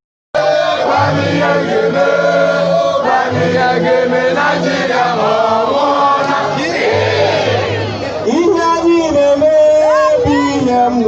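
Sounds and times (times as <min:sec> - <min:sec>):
crowd chanting in unison: 0:00.4 - 0:08.3.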